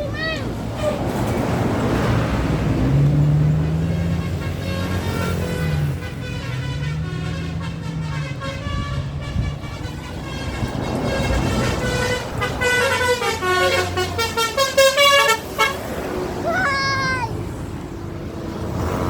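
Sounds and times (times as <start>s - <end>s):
low rumble of bus engine: 0.0s - 19.0s
musical air horn tune: 3.7s - 15.8s.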